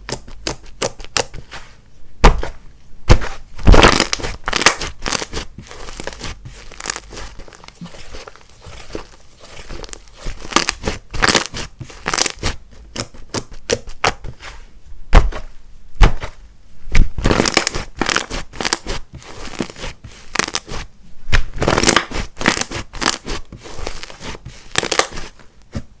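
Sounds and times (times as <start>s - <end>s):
slime squishing and crackling: 3.1s - 14.5s, 15.1s - 25.4s
slime popping: 3.6s - 12.5s, 24.7s - 25.2s.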